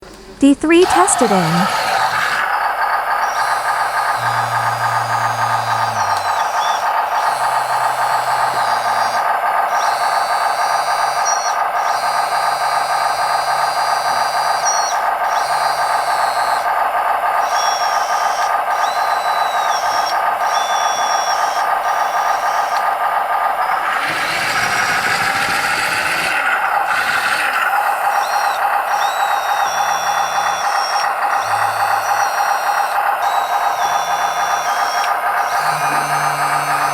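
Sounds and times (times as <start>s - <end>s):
toy bulldozer mechanical drone: 0.0s - 36.9s
high squealing tones: 3.2s - 9.2s, 29.0s - 36.9s.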